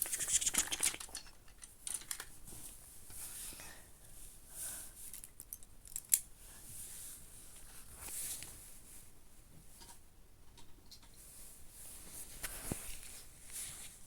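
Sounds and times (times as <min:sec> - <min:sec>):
soft rustling: 0:11.2 - 0:14.0.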